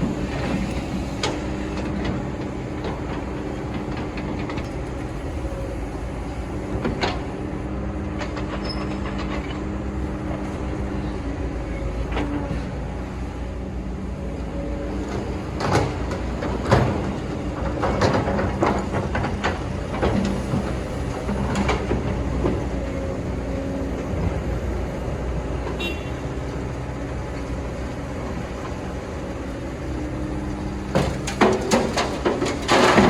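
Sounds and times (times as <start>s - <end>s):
excavator diesel engine running: 0.0s - 33.0s
crunching and clattering: 30.9s - 33.0s.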